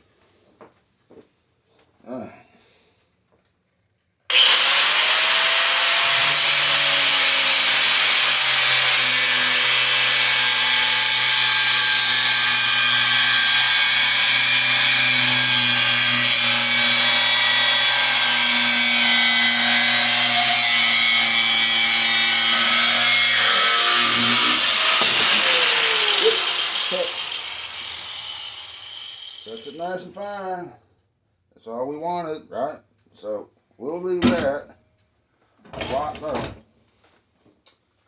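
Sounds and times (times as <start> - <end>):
angle grinder cutting: 4.3 - 30.0.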